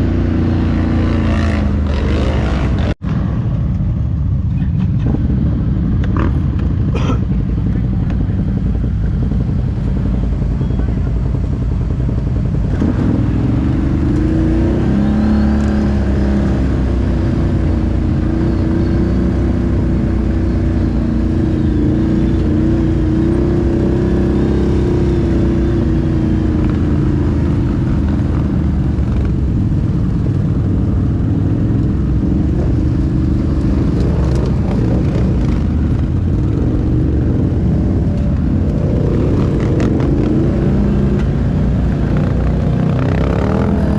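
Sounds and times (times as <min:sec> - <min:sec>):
atv engine running: 0:00.0 - 0:43.9
steady low rumble: 0:02.9 - 0:14.8, 0:24.8 - 0:43.9.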